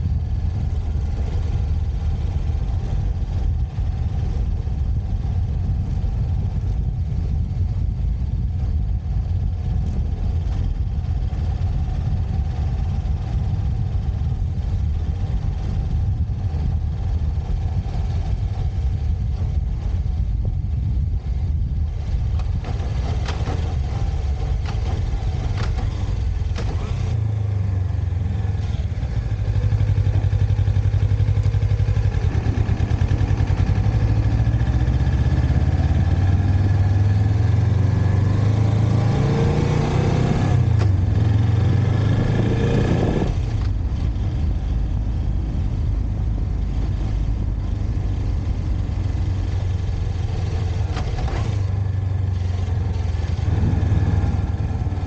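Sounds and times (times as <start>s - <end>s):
motorcycle engine revving: 21.1s - 55.0s.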